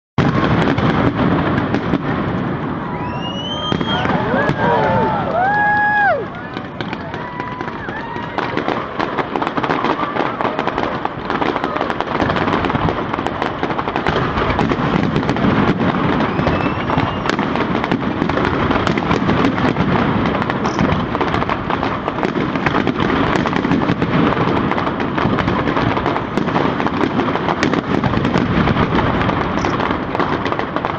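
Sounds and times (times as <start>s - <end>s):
fireworks bangs and crackles: 0.2s - 30.9s.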